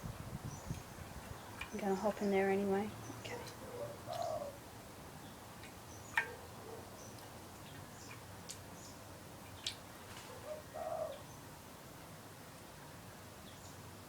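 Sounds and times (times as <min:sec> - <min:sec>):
soft low bird coo: 0:03.1 - 0:04.6, 0:09.6 - 0:11.4.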